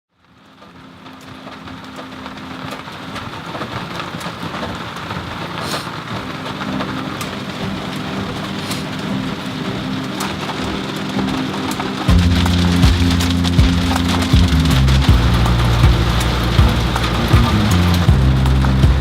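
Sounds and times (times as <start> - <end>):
steady rain falling: 0.1 - 19.0
low steady hum: 12.1 - 19.0.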